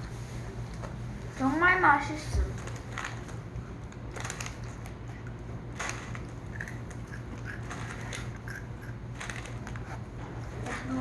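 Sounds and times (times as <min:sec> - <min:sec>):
steady low hum: 0:00.0 - 0:11.0
food being chewed: 0:03.9 - 0:10.1.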